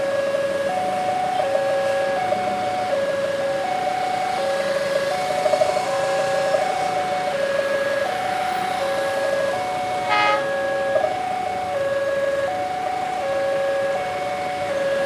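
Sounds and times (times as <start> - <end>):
level crossing alarm ringing: 0.0 - 15.0
short horn toot: 10.1 - 10.5.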